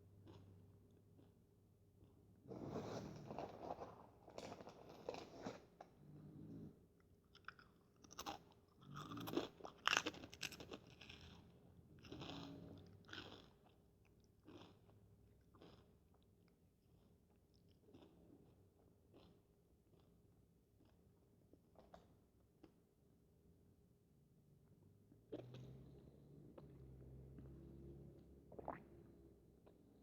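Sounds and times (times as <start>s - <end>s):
chewing crisp corn chips: 0.2s - 1.4s, 7.2s - 22.8s.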